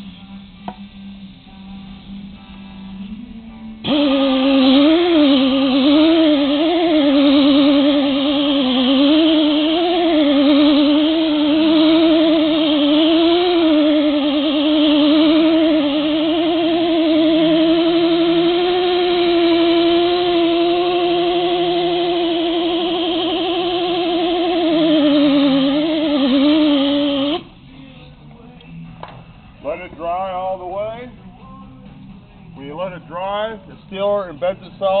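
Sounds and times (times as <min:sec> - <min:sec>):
electric buffer motor whine: 0:03.8 - 0:27.5.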